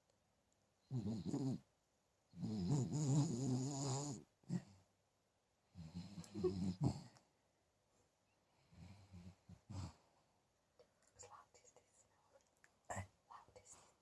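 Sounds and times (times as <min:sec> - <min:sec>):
dog snoring: 0:00.9 - 0:01.7, 0:02.3 - 0:04.8, 0:05.8 - 0:07.2.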